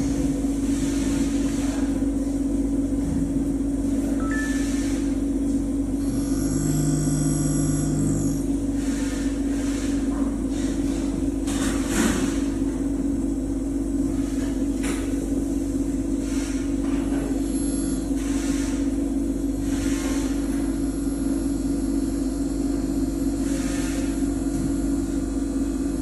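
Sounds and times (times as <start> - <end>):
grinding machine hum: 5.8 - 9.2, 15.3 - 26.0
high machine whine: 5.8 - 9.3, 15.1 - 26.0.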